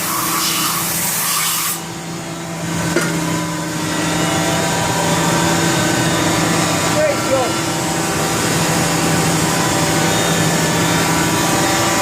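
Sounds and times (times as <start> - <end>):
coolant spraying hiss: 0.0 - 1.8
machine humming: 0.0 - 12.0.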